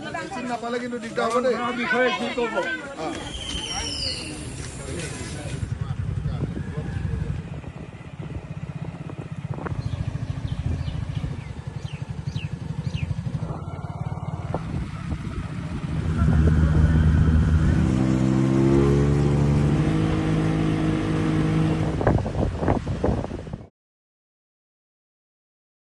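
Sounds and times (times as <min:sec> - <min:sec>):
engine running: 0:04.5 - 0:23.7.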